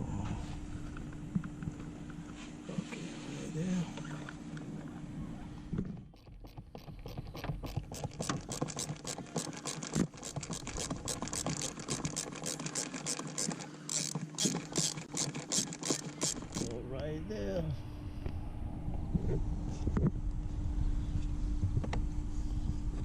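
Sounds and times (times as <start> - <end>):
hand ratchet clicking rapidly: 6.2 - 16.7.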